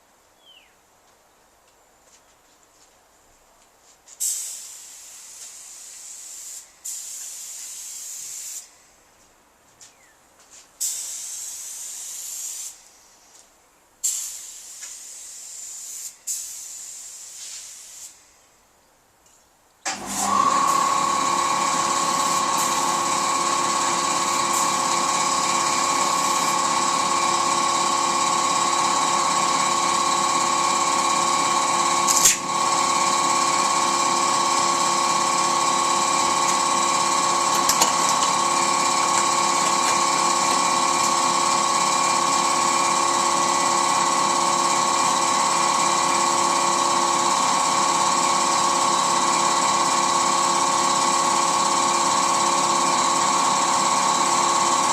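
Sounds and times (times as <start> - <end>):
power tool whining: 19.9 - 54.9.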